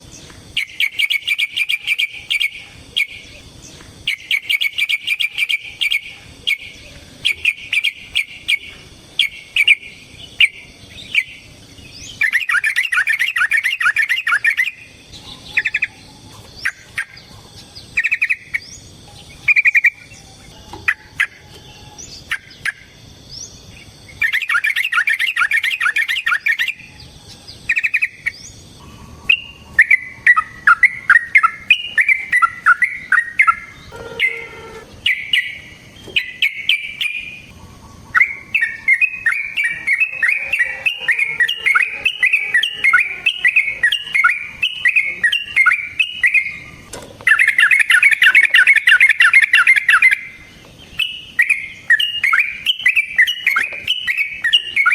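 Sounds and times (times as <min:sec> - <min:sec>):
bird chattering trills: 0:00.0 - 0:54.9
bird chips: 0:27.5 - 0:54.9.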